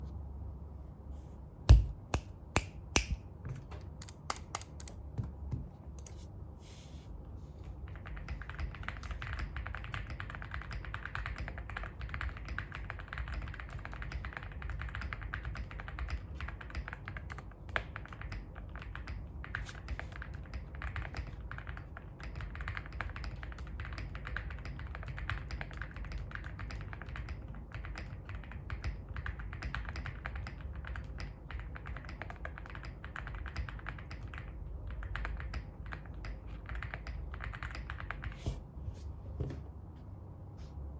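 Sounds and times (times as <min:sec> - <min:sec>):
computer keyboard typing: 0:03.9 - 0:05.0, 0:07.8 - 0:38.4.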